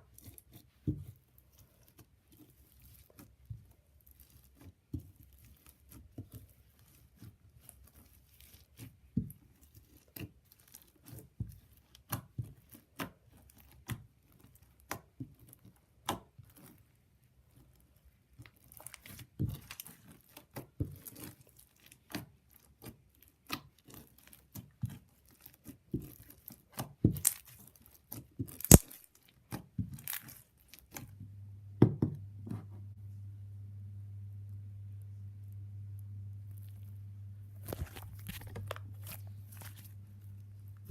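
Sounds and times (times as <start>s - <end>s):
slime squishing: 0.0s - 31.1s, 37.5s - 40.9s
low steady hum: 31.0s - 40.9s.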